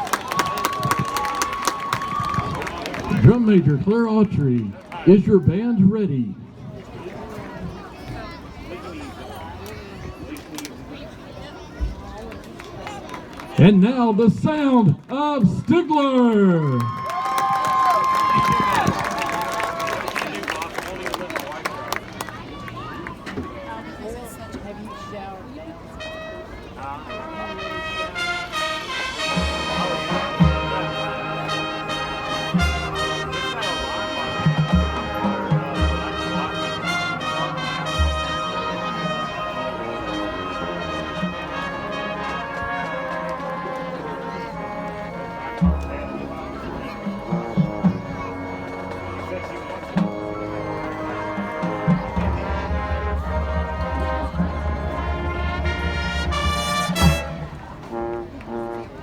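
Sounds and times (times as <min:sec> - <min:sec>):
marching band playing: 0:00.0 - 0:06.3, 0:16.6 - 0:22.6, 0:25.8 - 0:59.0.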